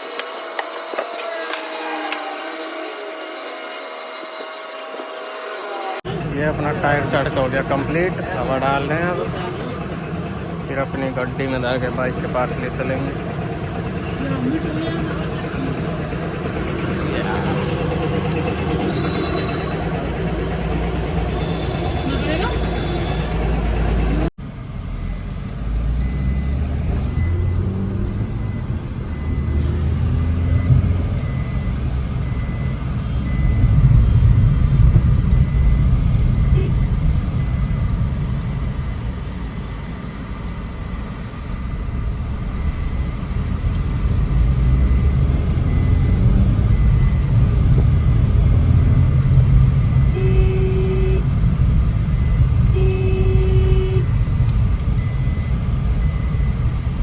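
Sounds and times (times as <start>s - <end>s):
vehicle engine and road rumble: 2.8s - 57.0s
short steady beeps: 25.0s - 51.5s, 52.1s - 56.6s.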